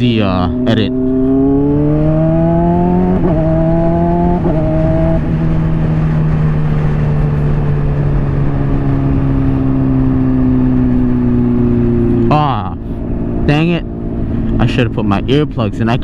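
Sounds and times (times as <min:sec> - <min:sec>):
motorcycle engine accelerating: 0:00.0 - 0:16.0
wind rush: 0:00.9 - 0:13.5.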